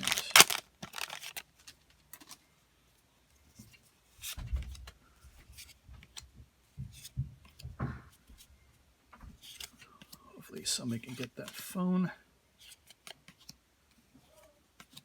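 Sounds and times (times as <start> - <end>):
foil card packs crinkling: 0.0 - 2.4.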